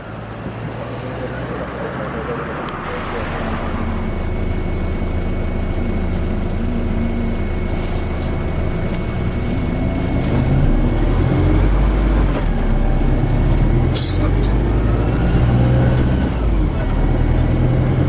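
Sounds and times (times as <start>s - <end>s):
bus engine whine and drone: 0.0s - 18.0s.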